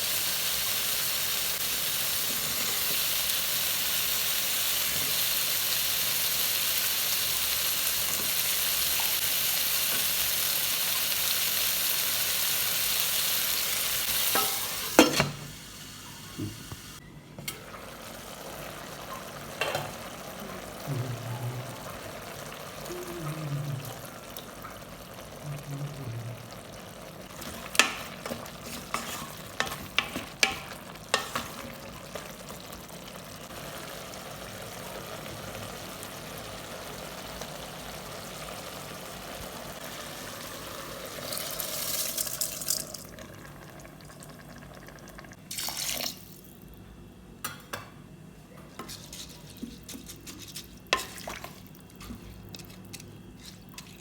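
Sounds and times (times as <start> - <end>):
food sizzling in a pot: 0.0 - 46.8, 48.8 - 54.0
spoon stirring and clicking on pot: 27.4 - 31.7.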